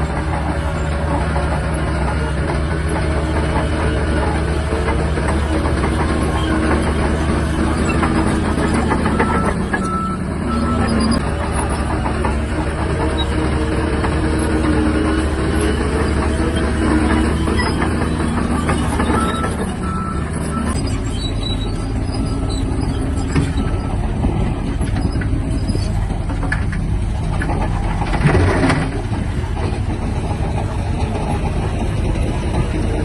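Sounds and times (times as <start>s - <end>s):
bulldozer diesel engine: 0.0s - 33.0s.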